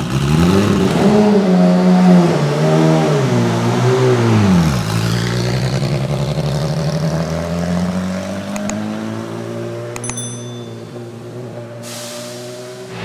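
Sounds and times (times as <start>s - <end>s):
sharp clicks: 8.5s - 8.8s, 10.0s - 10.6s.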